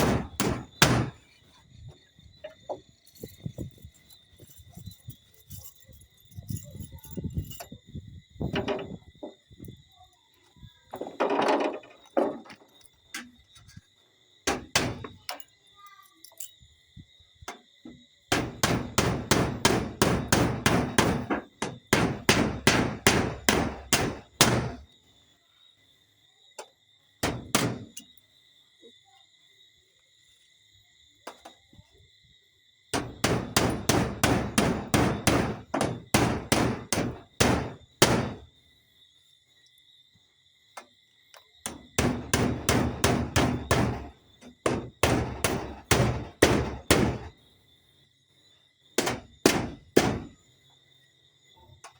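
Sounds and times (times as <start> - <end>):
hammer striking nails: 0.0 - 1.2, 18.3 - 24.8, 27.2 - 27.9, 32.9 - 38.4, 41.6 - 47.3, 49.0 - 50.3.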